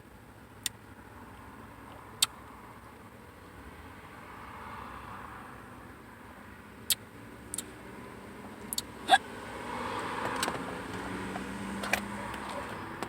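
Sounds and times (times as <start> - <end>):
vehicle rumble: 0.0 - 13.0
person hiccuping: 8.7 - 9.2.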